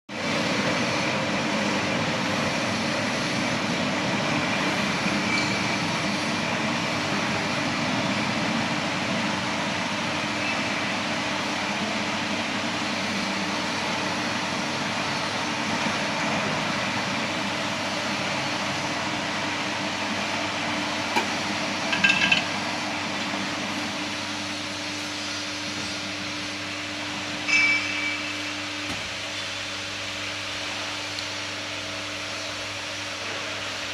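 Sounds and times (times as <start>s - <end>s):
bending machine running: 21.1s - 22.9s.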